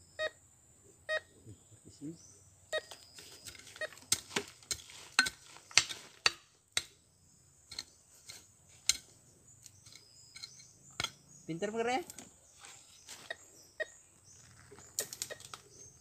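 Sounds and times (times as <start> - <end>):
digging tool scraping stony soil: 3.1 - 6.3.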